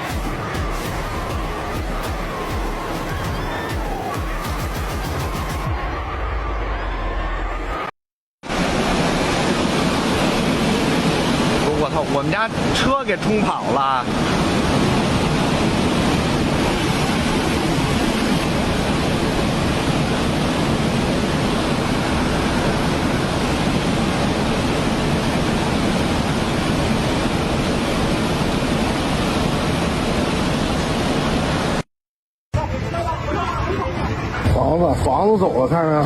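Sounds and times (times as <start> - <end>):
floodwater rushing: 0.0 - 5.8, 8.4 - 31.8.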